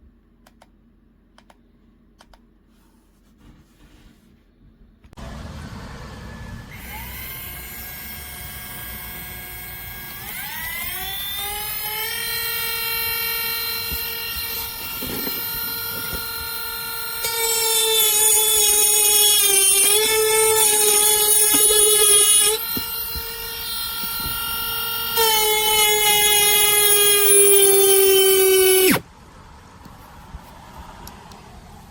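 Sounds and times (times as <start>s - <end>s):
rotary tool motor whine: 5.2s - 29.0s.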